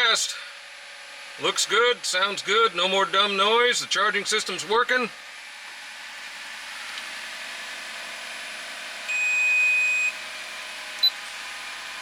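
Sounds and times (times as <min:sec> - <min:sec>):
electronic car chime: 0:09.1 - 0:10.2.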